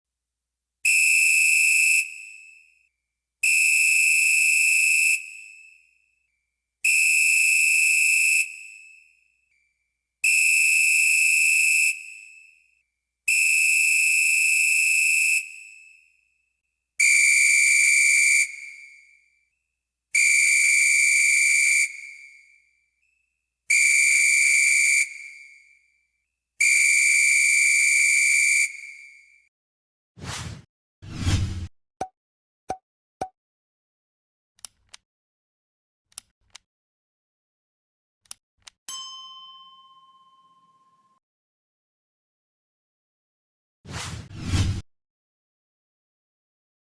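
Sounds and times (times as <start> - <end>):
referee's whistle blasts: 0.9 - 2.6, 3.4 - 5.8, 6.9 - 9.1, 10.2 - 12.5, 13.3 - 16.0, 17.0 - 19.0, 20.2 - 22.4, 23.7 - 25.6, 26.6 - 29.4.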